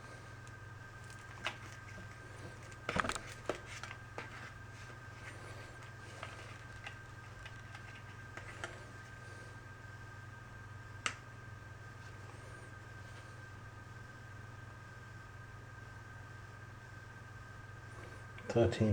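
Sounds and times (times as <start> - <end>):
low electrical hum: 0.0 - 18.9
clicks and rustles from handling leads: 0.4 - 9.2.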